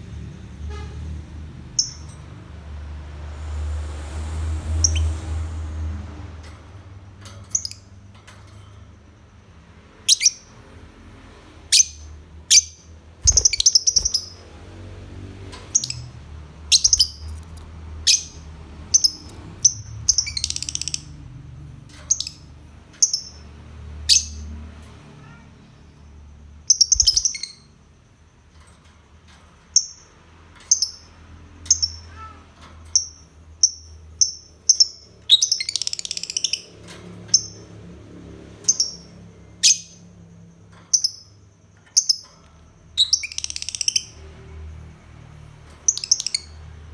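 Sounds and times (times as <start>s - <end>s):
lovebird chirping: 1.8s - 2.1s, 10.1s - 10.6s, 11.7s - 14.4s, 15.6s - 21.2s, 26.7s - 27.7s, 33.0s - 36.7s, 43.0s - 44.2s, 45.9s - 46.6s
lovebird chattering: 10.1s - 10.5s, 11.7s - 14.4s, 15.7s - 21.2s, 26.7s - 27.7s, 43.0s - 44.2s, 45.9s - 46.6s.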